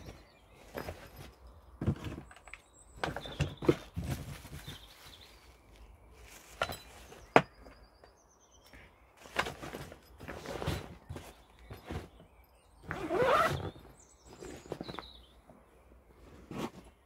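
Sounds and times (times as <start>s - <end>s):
small bird chirping: 0.0s - 9.2s.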